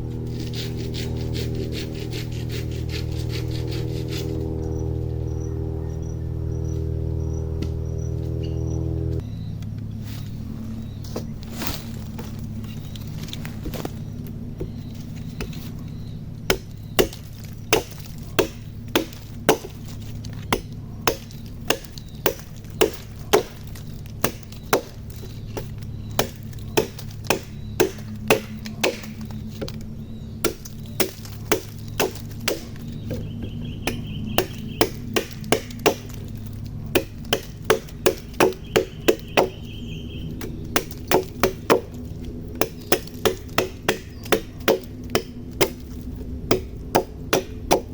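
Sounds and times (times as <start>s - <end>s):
steady low hum: 0.0s - 47.9s
wood being chopped: 16.4s - 47.9s.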